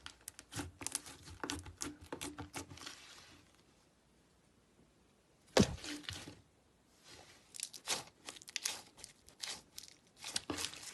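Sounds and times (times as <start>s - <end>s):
slime thud: 5.5s - 6.3s
slime crackling and popping: 7.6s - 10.9s.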